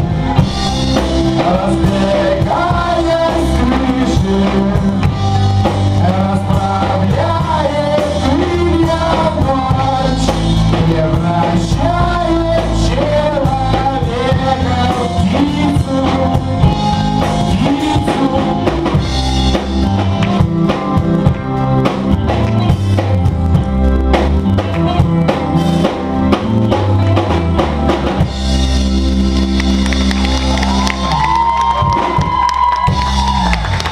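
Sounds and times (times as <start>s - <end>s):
live rock band playing: 0.0s - 33.9s
person singing: 0.4s - 20.4s.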